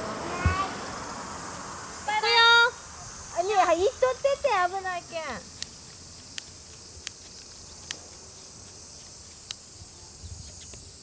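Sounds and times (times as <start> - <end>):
insects chorus: 0.0 - 11.0
faint ticks: 5.5 - 9.8
sharp clicks: 5.6 - 9.7.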